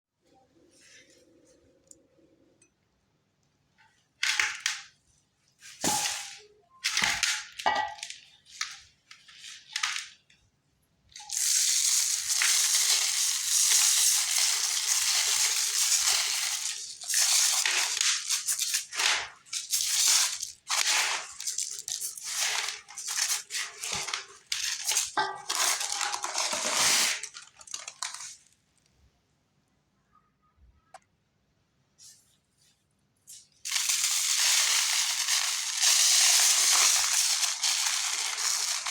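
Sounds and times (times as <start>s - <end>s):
cement chunks crumbling and crunching: 11.2s - 28.5s, 33.6s - 38.9s.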